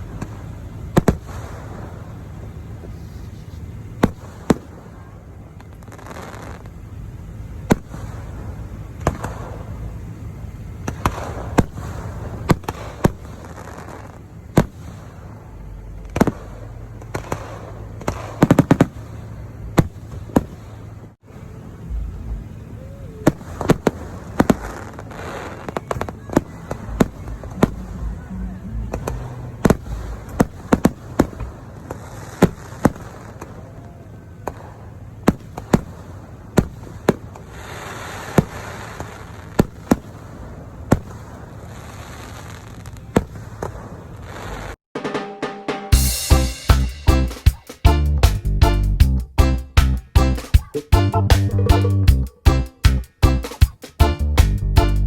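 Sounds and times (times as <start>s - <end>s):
fireworks bangs: 0.0s - 3.0s, 4.0s - 6.8s, 7.7s - 9.8s, 10.8s - 20.9s, 22.6s - 28.3s, 28.9s - 47.7s
fireworks hissing and crackling: 0.1s - 6.9s, 10.8s - 20.9s, 23.3s - 27.5s, 29.6s - 44.8s.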